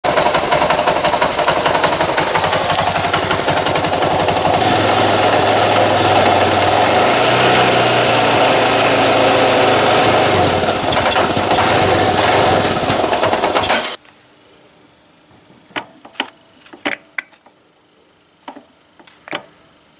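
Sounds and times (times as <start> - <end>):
fast clattering rattle: 0.0 - 14.0
single-cylinder engine running: 0.0 - 14.0.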